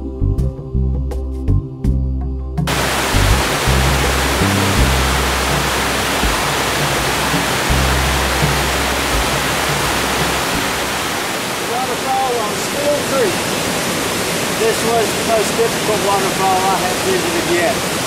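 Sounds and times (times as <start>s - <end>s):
background music: 0.0s - 11.2s
waterfall rushing: 2.7s - 18.0s.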